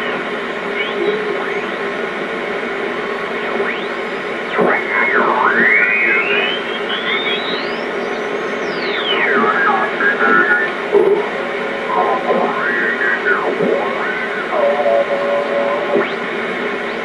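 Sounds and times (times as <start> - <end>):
garbled radio signal: 0.0 - 17.0
radio static hiss: 0.0 - 17.0
heterodyne whistles: 5.5 - 9.6.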